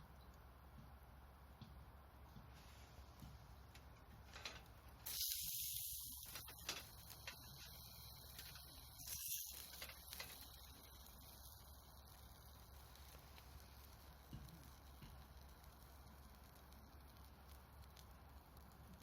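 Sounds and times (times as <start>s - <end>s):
campfire crackles: 2.3s - 19.0s
steak sizzling on grill: 4.4s - 19.0s.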